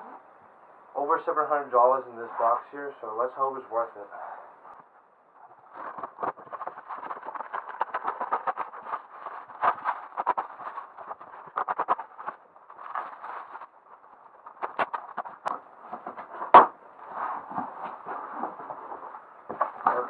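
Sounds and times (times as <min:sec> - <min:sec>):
cardboard box scraping and tearing: 0:05.8 - 0:13.7.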